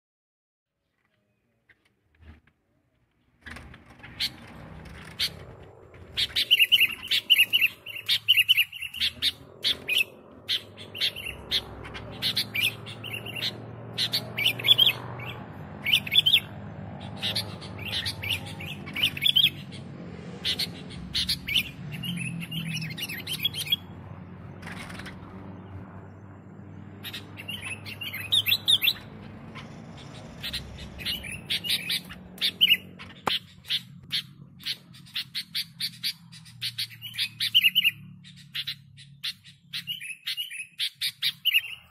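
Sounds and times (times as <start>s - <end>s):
bird singing bubbly phrases: 6.1s - 19.8s.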